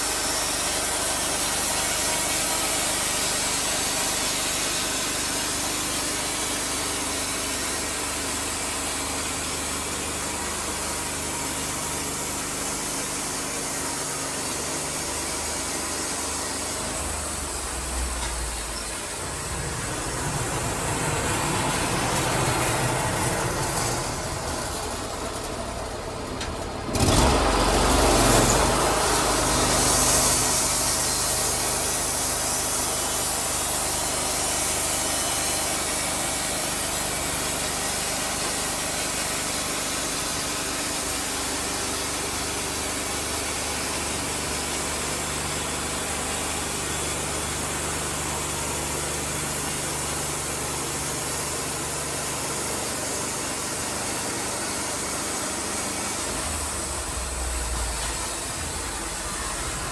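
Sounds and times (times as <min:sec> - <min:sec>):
sawmill engine running: 0:00.0 - 0:59.9
hissing rush: 0:16.7 - 0:25.0, 0:54.5 - 0:59.9.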